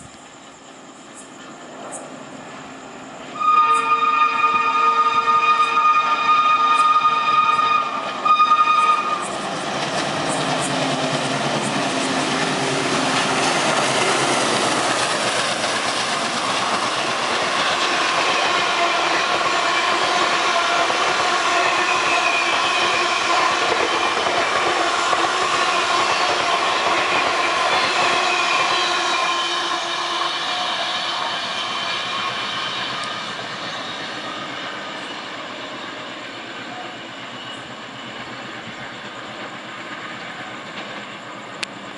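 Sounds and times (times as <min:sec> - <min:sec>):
locomotive horn: 0:03.4 - 0:09.3, 0:18.4 - 0:23.6, 0:24.9 - 0:33.0
locomotive engine passing: 0:05.1 - 0:41.9.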